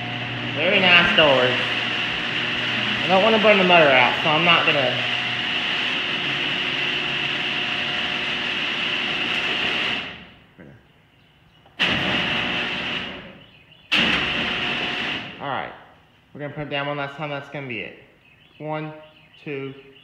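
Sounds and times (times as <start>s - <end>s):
garage door openers whining and rattling: 0.0s - 10.5s, 11.7s - 15.4s.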